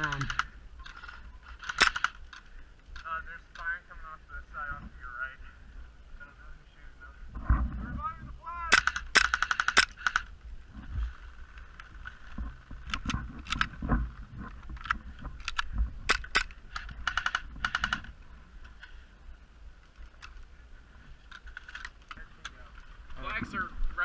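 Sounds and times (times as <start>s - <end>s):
airsoft guns firing: 1.6s - 2.2s, 8.7s - 10.3s, 15.5s - 18.1s.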